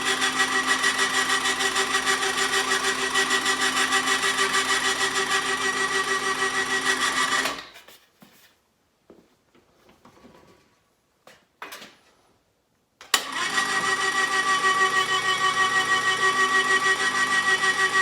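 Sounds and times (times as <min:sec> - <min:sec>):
motor whine with fast pulse: 0:13.2 - 0:18.0.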